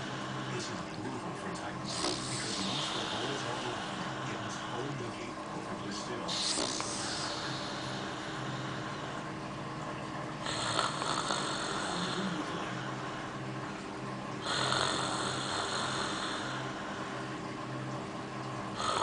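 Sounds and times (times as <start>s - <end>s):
man snoring: 1.8s - 5.1s, 6.2s - 9.2s, 10.4s - 13.4s, 14.4s - 17.3s, 18.8s - 19.0s.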